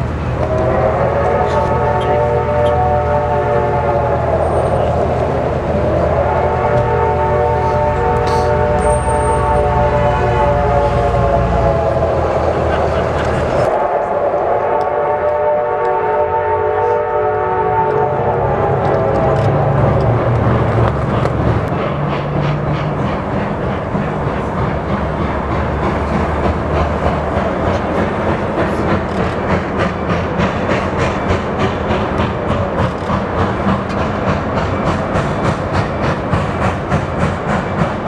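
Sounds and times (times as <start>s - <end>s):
locomotive rhythmic chuffing: 0.0s - 38.0s
steam locomotive whistle: 0.3s - 20.5s.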